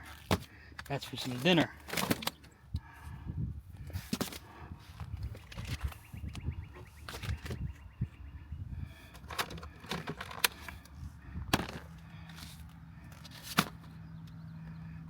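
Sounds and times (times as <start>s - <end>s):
food packages and utensils handled: 0.0s - 2.5s, 9.1s - 10.8s, 11.6s - 13.9s.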